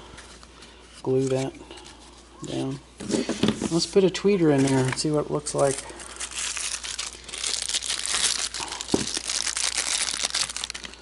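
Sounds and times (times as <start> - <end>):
plastic packaging crinkling: 4.5 - 11.0.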